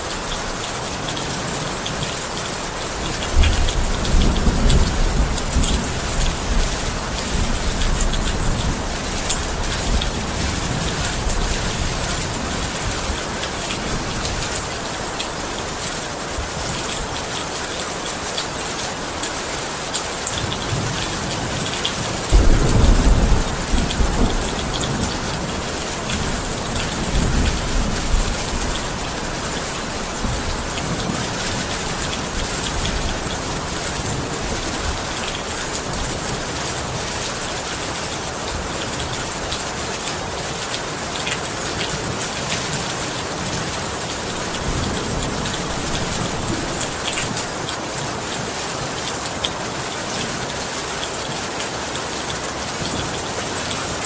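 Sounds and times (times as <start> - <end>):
steady rain falling: 0.0 - 54.0
thunder rumbling: 21.6 - 36.2, 44.2 - 47.4.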